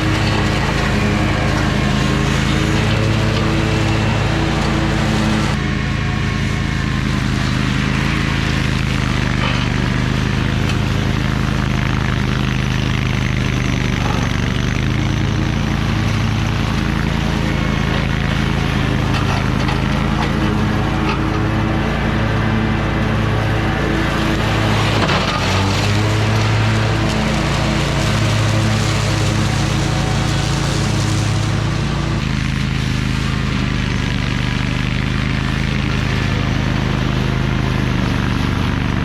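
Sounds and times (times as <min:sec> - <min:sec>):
lawn mower mowing: 0:00.0 - 0:39.0.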